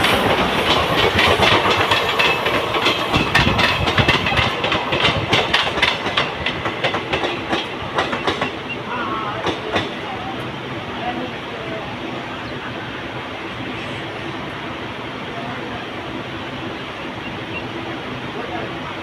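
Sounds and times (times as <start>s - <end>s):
train wheels clattering: 0.0s - 10.5s.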